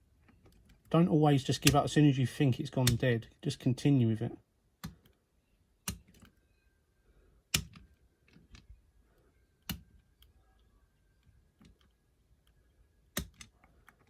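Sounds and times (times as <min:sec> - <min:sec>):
lock pick clicking in lock: 0:05.8 - 0:06.3, 0:07.5 - 0:08.7, 0:13.1 - 0:14.0.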